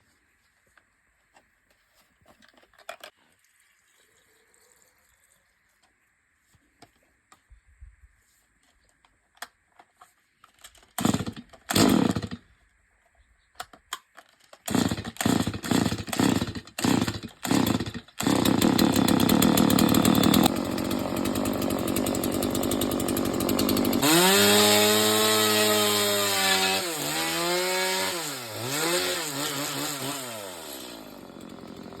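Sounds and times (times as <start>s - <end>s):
chainsaw starting and revving: 11.0s - 12.4s, 14.7s - 32.0s.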